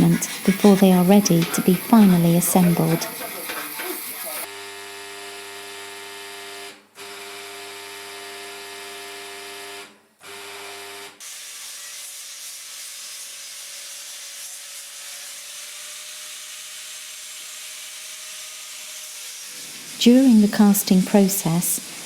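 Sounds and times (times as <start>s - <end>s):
grinding hiss on metal: 0.0s - 4.5s, 11.2s - 22.0s.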